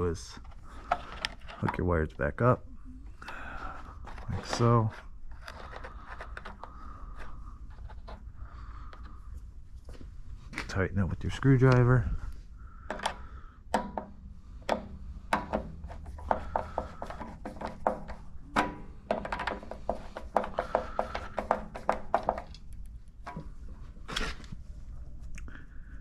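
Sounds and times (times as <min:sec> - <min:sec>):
screwdriver metallic clicks and taps: 0:12.9 - 0:15.7, 0:17.1 - 0:23.4.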